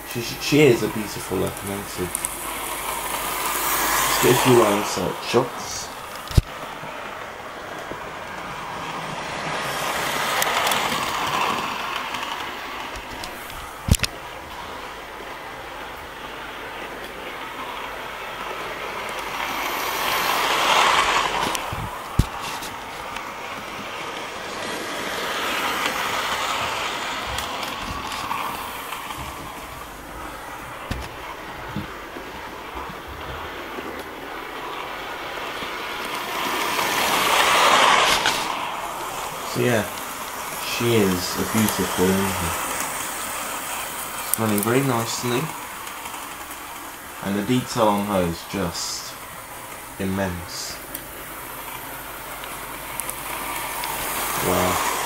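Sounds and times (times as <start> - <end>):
model train motor whirring: 0.2 - 6.9, 7.8 - 14.9, 16.8 - 31.2, 33.7 - 55.0.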